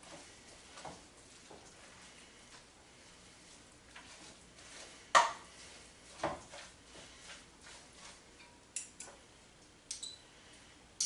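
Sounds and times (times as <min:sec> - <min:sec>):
utensils clicking on cookware: 0:08.4 - 0:09.1, 0:09.9 - 0:10.2.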